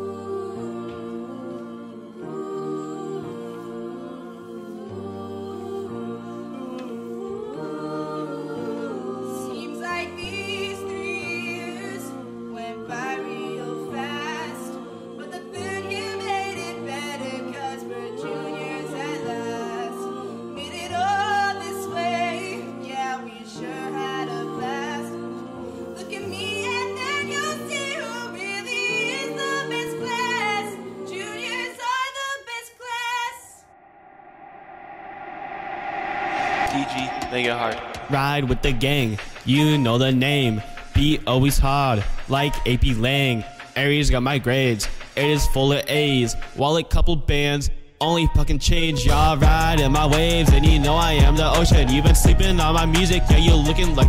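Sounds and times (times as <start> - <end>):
choir-like voices: 0.0 - 43.9, 49.0 - 54.0
person singing: 35.7 - 43.4, 49.0 - 54.0.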